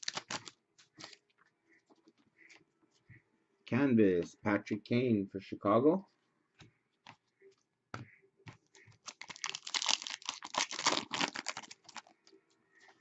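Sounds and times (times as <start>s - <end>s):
trading cards clicking and rustling: 0.0s - 1.3s, 8.5s - 13.0s.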